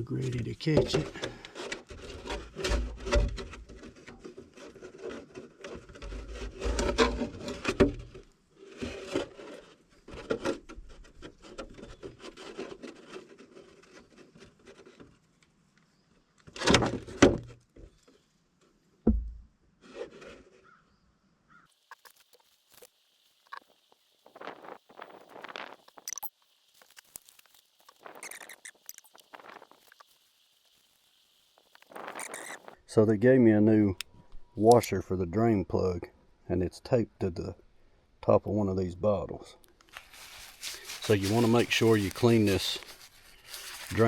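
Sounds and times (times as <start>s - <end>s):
plastic jug rubbing and scraping: 0.0s - 15.3s, 19.8s - 20.7s, 39.9s - 44.0s.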